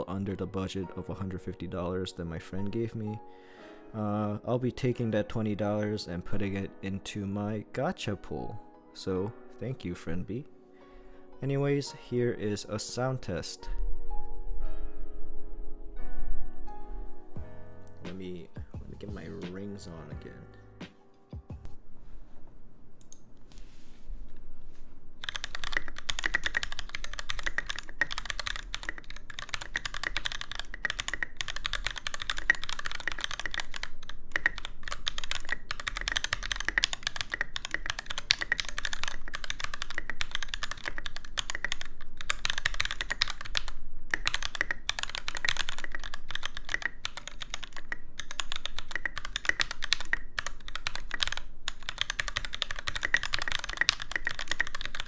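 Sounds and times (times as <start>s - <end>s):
mechanical keyboard typing: 25.2s - 55.0s.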